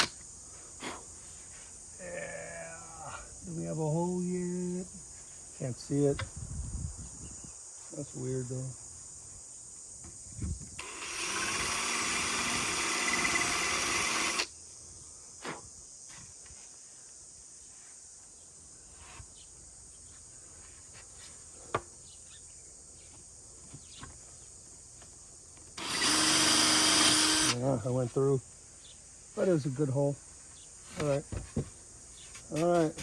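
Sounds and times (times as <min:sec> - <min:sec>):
power drill boring through drum shell: 0:10.8 - 0:14.5, 0:25.8 - 0:27.6.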